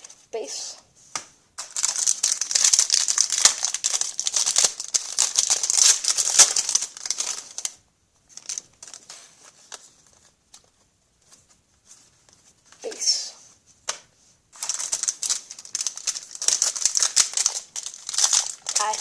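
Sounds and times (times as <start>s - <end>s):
wrapper crinkling and tearing: 1.6s - 10.7s, 14.5s - 19.0s.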